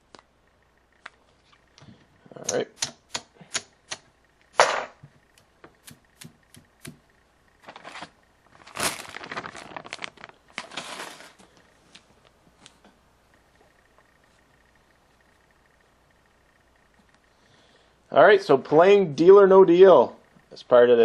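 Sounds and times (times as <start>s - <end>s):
rustling: 7.6s - 12.8s.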